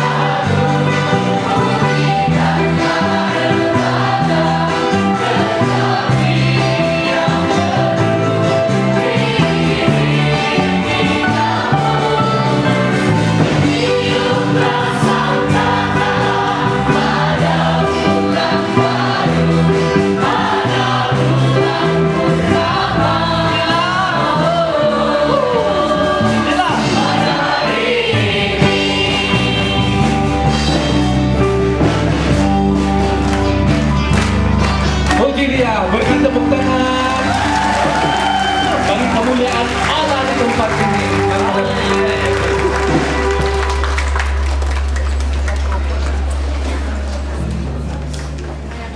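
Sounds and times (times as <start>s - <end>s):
group singing praise song: 0.0s - 31.1s, 36.5s - 45.0s
band playing: 0.0s - 48.9s.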